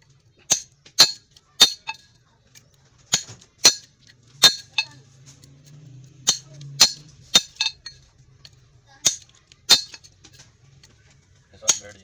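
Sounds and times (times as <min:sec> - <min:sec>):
hammer striking steel: 0:00.5 - 0:02.0, 0:03.1 - 0:05.0, 0:06.2 - 0:08.0, 0:09.0 - 0:10.1, 0:11.7 - 0:12.0.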